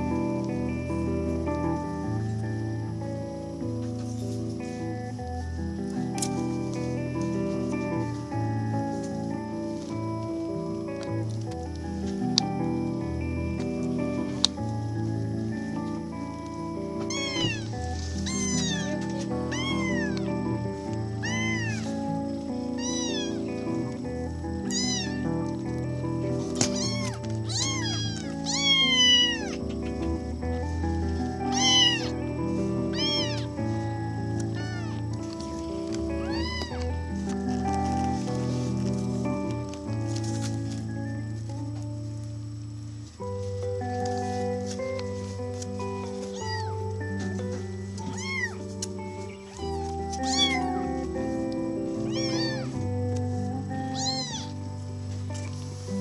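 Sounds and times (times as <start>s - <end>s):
background music: 0.0s - 56.0s
kittens meowing: 17.0s - 25.6s, 26.3s - 38.2s, 46.0s - 52.9s, 53.6s - 54.7s.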